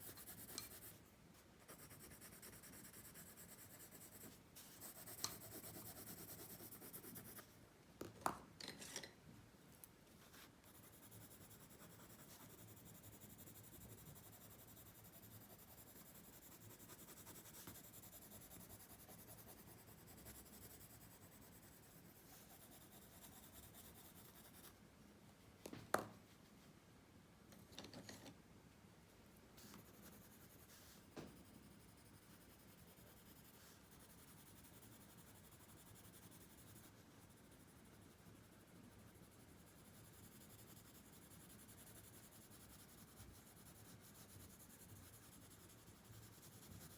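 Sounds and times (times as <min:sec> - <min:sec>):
pencil shading on paper: 0:01.6 - 0:07.4, 0:10.3 - 0:24.7, 0:29.6 - 0:46.9.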